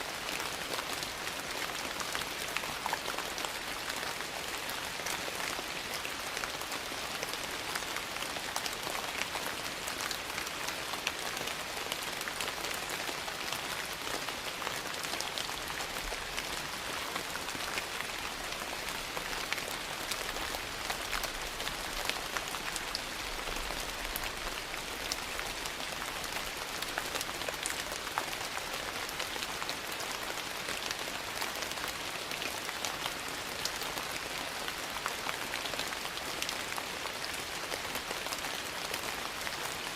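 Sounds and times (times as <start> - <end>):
rain pattering on surfaces: 0.0 - 39.9.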